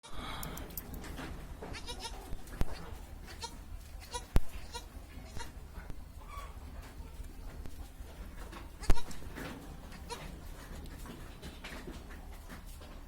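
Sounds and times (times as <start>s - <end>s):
goats bleating: 9.9s - 10.4s.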